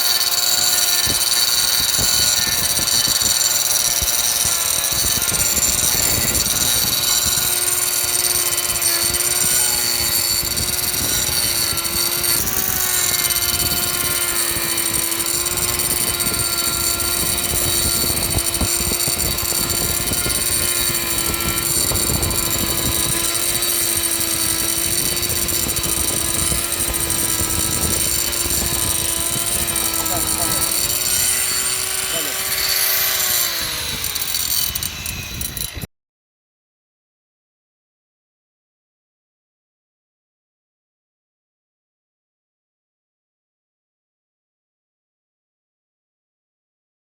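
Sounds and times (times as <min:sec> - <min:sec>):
angle grinder milling wood: 0:00.0 - 0:35.9.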